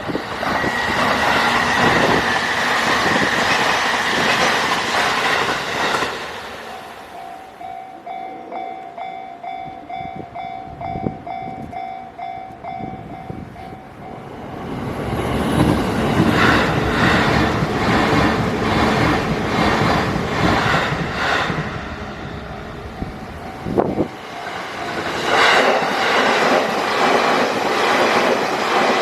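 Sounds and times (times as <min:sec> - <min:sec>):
train wheels clattering: 0:00.0 - 0:07.8, 0:23.0 - 0:29.0
railroad crossing bell dinging: 0:05.4 - 0:14.6, 0:22.2 - 0:27.0.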